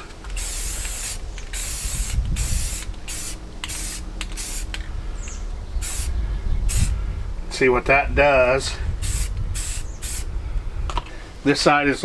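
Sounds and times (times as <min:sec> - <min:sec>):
spray paint can hissing: 0:00.3 - 0:04.8, 0:05.8 - 0:06.1, 0:06.7 - 0:07.0, 0:09.0 - 0:10.3.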